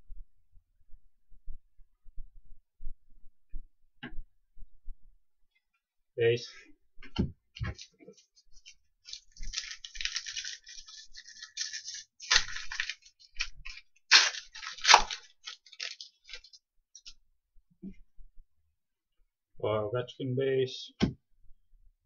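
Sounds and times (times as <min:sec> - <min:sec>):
cards scraping and rustling: 0:07.6 - 0:17.1
card stock snapping: 0:09.1 - 0:16.5.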